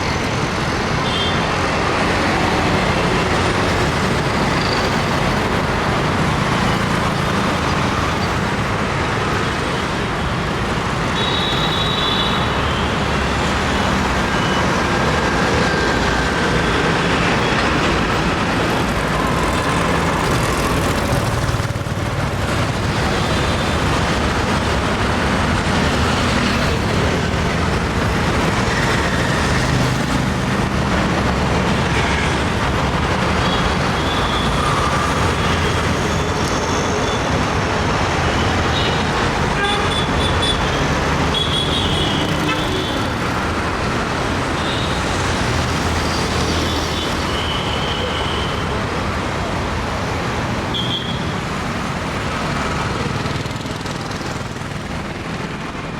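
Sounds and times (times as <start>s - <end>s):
road traffic: 0.0s - 55.9s
vehicle horns honking: 38.7s - 43.1s, 50.7s - 51.3s.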